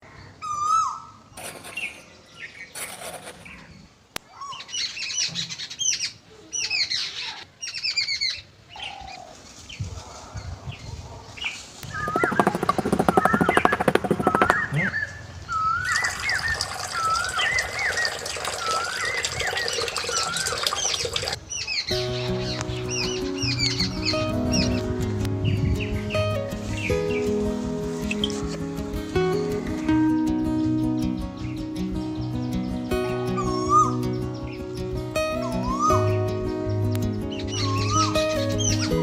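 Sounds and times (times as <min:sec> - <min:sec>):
birds chirping: 0:11.4 - 0:39.0
fast rattling buzz: 0:11.8 - 0:15.1
wavy whistled bird call: 0:11.8 - 0:24.8, 0:33.3 - 0:34.2, 0:35.2 - 0:36.2, 0:37.4 - 0:39.0.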